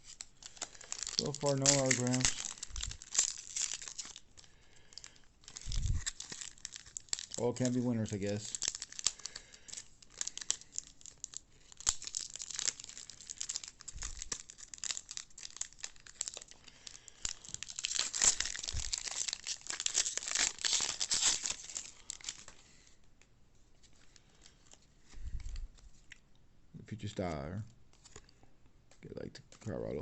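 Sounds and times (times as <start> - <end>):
foil wrapper tearing and crinkling: 0.0 - 22.6.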